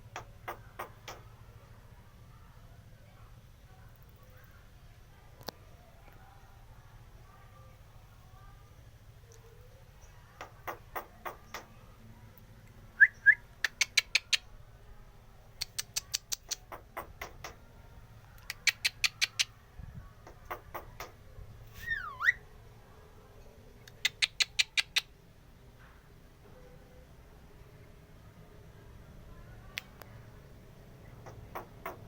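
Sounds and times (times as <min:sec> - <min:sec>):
starling clicking calls: 0:00.0 - 0:01.3, 0:10.0 - 0:11.8, 0:13.0 - 0:14.5, 0:15.6 - 0:17.6, 0:18.3 - 0:19.6, 0:20.2 - 0:21.2, 0:23.8 - 0:25.2, 0:31.0 - 0:32.0
starling whistles: 0:21.8 - 0:22.4.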